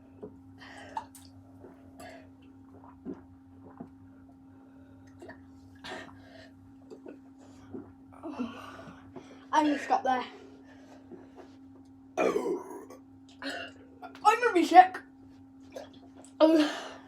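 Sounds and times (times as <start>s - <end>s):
steady low hum: 0.0s - 17.0s
person gulping and swallowing: 0.1s - 4.4s, 6.8s - 9.2s, 12.2s - 13.8s, 15.7s - 16.4s.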